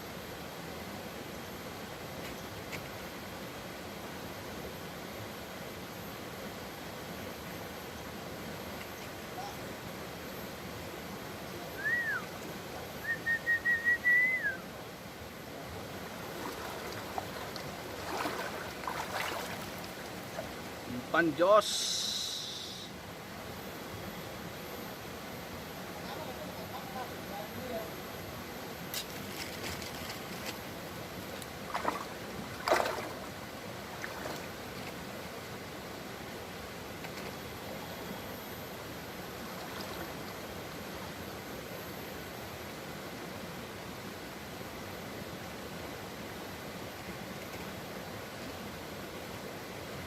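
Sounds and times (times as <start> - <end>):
river flowing: 0.2 - 37.9
high whistled notes: 11.8 - 12.3, 13.0 - 14.6
river water rushing: 15.3 - 23.0, 31.6 - 36.0.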